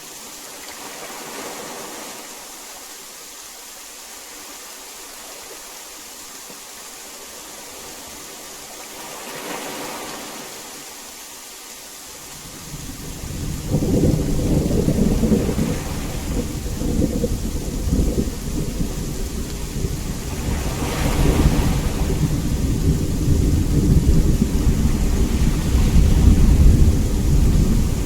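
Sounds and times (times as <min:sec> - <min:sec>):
heavy rain: 0:00.0 - 0:28.0
thunder rumbling: 0:12.4 - 0:28.0.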